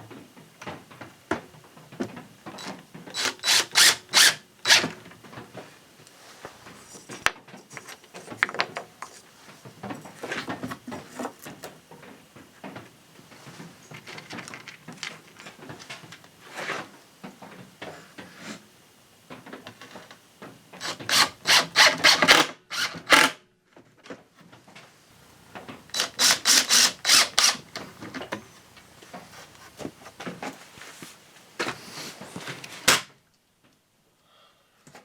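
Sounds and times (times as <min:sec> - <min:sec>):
light scraping and handling: 0:05.3 - 0:11.8, 0:12.6 - 0:17.0, 0:25.1 - 0:32.9
rasping strokes on wood: 0:25.9 - 0:27.8.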